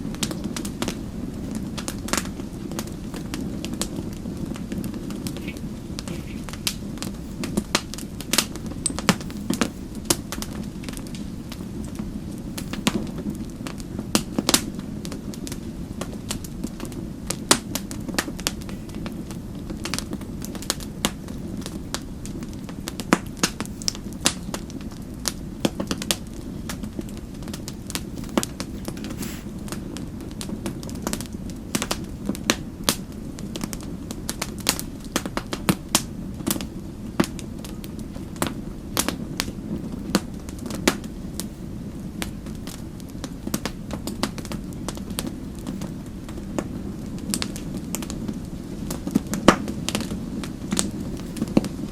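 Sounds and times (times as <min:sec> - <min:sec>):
wood fire crackling: 0:00.0 - 0:51.9.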